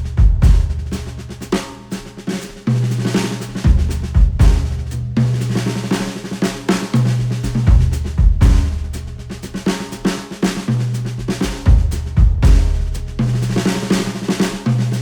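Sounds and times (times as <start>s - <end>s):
instrumental music with drum kit: 0.0s - 15.0s.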